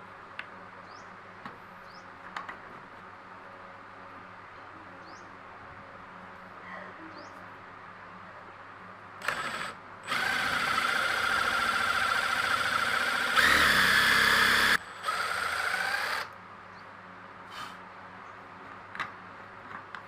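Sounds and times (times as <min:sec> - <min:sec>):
power tool motor running: 0:09.2 - 0:16.3.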